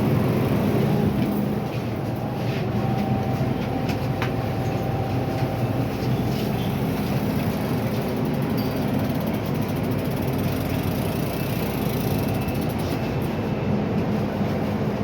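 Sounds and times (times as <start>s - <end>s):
metro wheels rumbling on rail: 0.0s - 15.0s.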